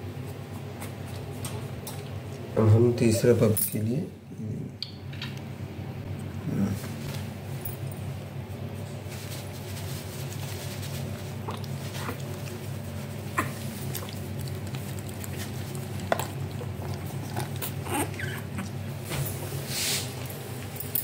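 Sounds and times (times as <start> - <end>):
steady low hum: 0.0 - 21.0
puppy squeaking and whimpering: 17.6 - 18.8.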